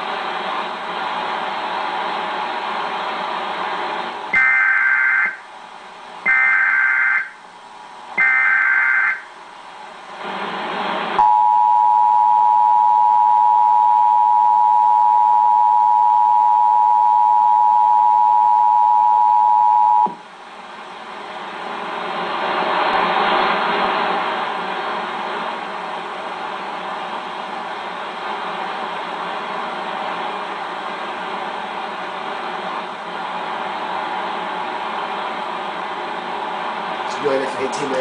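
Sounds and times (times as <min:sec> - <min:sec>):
two-tone attention signal: 0:11.2 - 0:20.2.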